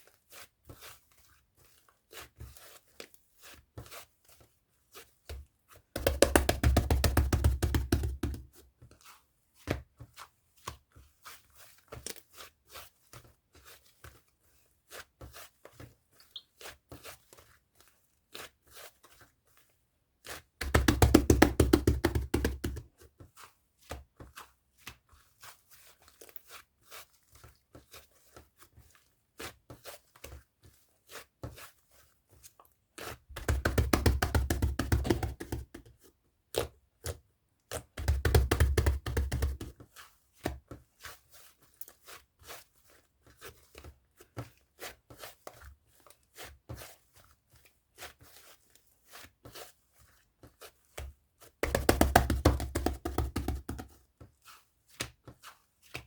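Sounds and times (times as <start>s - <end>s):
clicks and taps: 6.0s - 8.5s, 20.6s - 22.9s, 33.4s - 35.9s, 38.0s - 39.7s, 51.6s - 54.0s.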